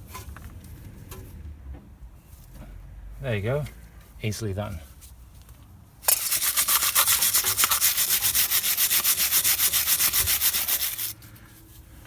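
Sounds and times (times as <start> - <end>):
wire brush scrubbing metal: 6.0 - 11.2.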